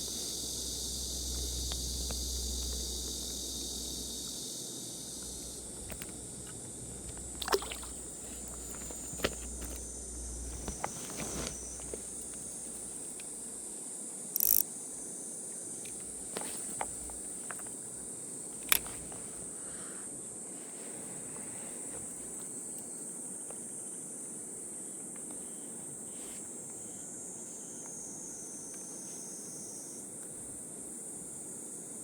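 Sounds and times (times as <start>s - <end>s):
high-pitched insect chorus: 0.0s - 32.0s
water splashes: 5.5s - 10.9s.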